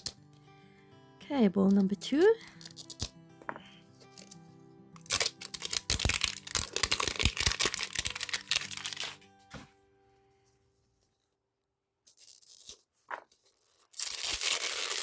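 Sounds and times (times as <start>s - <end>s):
soft background music: 0.0s - 11.3s
packaging crackling and tearing: 2.4s - 3.1s, 5.0s - 9.2s, 12.1s - 15.0s.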